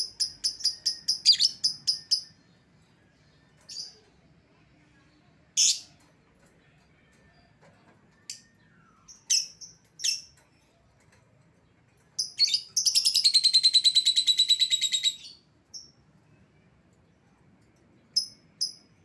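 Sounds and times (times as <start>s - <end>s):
lovebird chirping and chattering: 0.0s - 2.4s, 5.6s - 6.0s, 8.3s - 10.4s, 12.1s - 16.0s, 18.0s - 19.0s.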